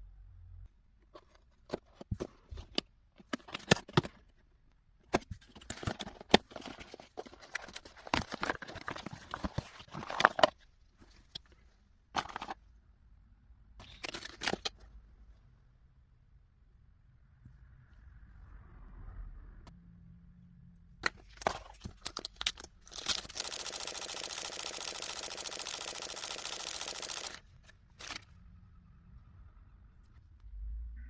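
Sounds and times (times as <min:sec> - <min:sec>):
packaging clicks and taps: 0:01.2 - 0:04.2, 0:05.1 - 0:10.6, 0:12.2 - 0:12.6
packaging rustling and scraping: 0:05.2 - 0:11.5, 0:12.2 - 0:12.6.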